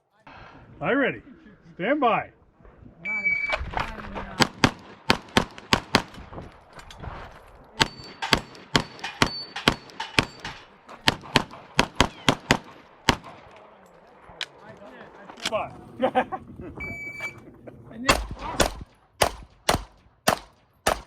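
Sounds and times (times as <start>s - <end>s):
rapid pistol fire: 4.4s - 6.3s, 11.1s - 13.5s, 18.1s - 21.0s.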